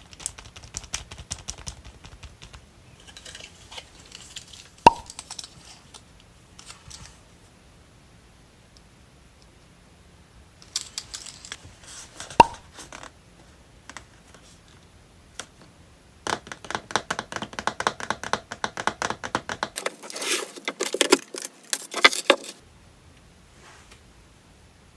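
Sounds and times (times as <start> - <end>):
rapid crackling and clicking: 0.0 - 7.2, 16.3 - 22.6
packaging crinkling and tearing: 19.8 - 22.6.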